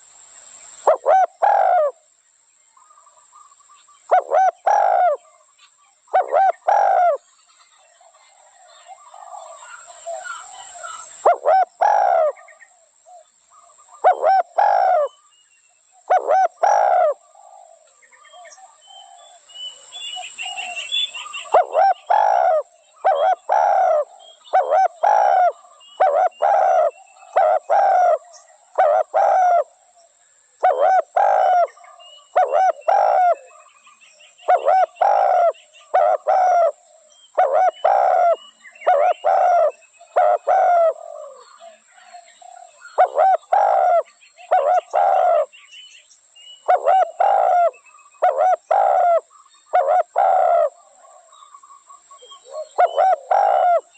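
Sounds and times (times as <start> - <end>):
dove cooing: 0.8 - 2.0, 4.1 - 5.4, 6.1 - 7.3, 8.0 - 13.3, 13.9 - 15.2, 16.1 - 19.3, 20.5 - 29.9, 30.6 - 33.7, 34.4 - 45.5, 46.6 - 51.3, 52.2 - 53.9.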